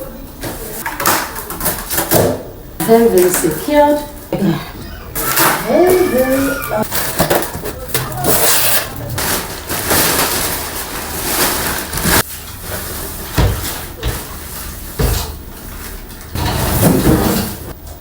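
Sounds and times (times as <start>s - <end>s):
packaging rustling and scraping: 5.2s - 17.6s.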